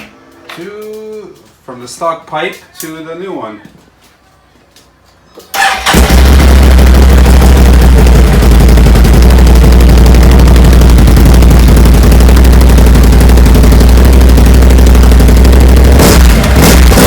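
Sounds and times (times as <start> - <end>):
engine low pulsing rumble: 6.0 - 17.0.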